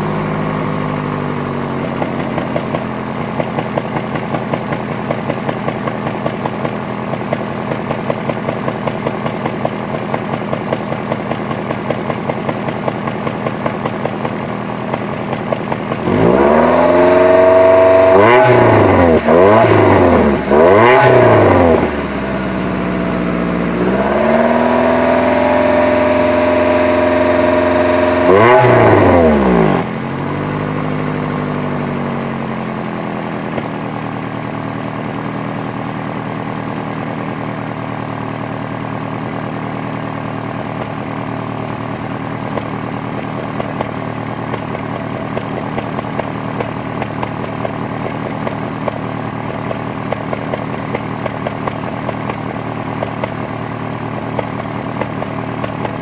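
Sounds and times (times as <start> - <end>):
car engine revving and idling: 0.0 - 56.0
faint irregular engine ticks: 1.8 - 16.2, 33.4 - 34.6, 40.4 - 56.0.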